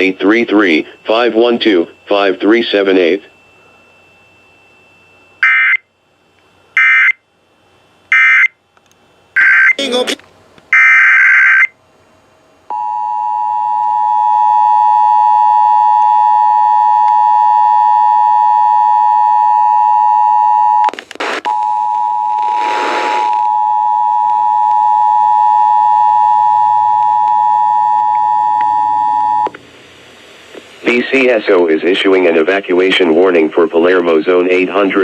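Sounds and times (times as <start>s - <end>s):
short crackle: 20.9s - 21.7s, 22.3s - 23.4s
data burst: 22.3s - 23.5s.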